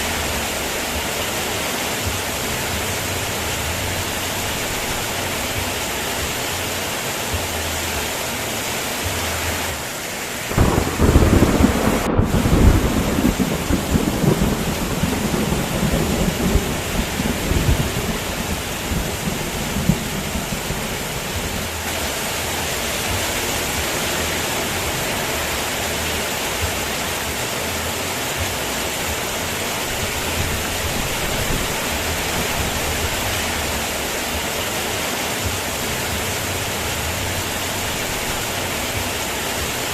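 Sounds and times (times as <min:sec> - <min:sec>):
steady rain: 0:00.0 - 0:39.9
thunderclap with low rumble: 0:10.5 - 0:21.7.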